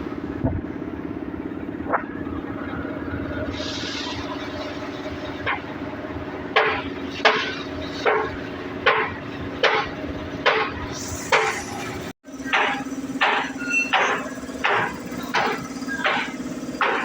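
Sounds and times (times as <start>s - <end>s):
steady low hum: 0.0s - 13.2s
hammer striking metal: 6.5s - 17.0s.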